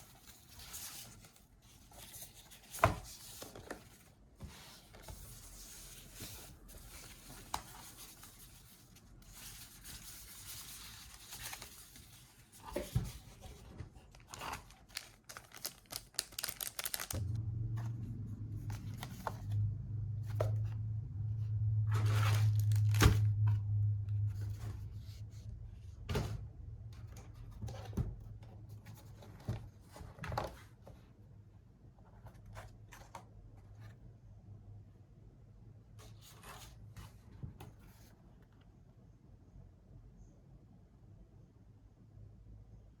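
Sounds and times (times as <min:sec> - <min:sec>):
packaging tearing and rustling: 0:14.1 - 0:17.4, 0:22.0 - 0:23.3
steady low hum: 0:17.2 - 0:27.5.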